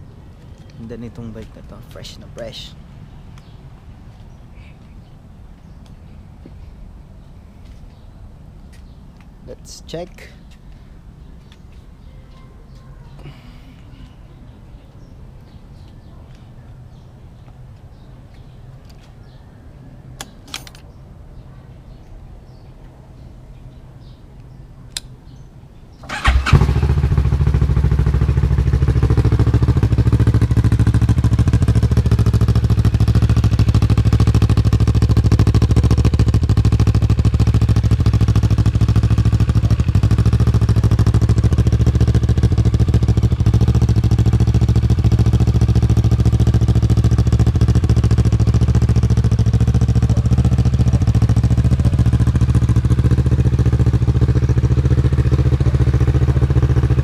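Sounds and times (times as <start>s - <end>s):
click: 24.4s - 25.1s
motorcycle engine starting and idling: 25.9s - 57.0s.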